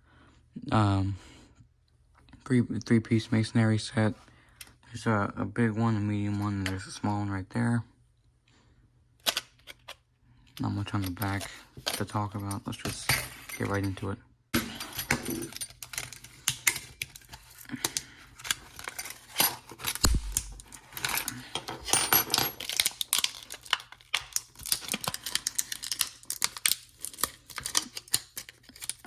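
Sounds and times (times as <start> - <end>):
packaging clicking: 22.5 - 29.0.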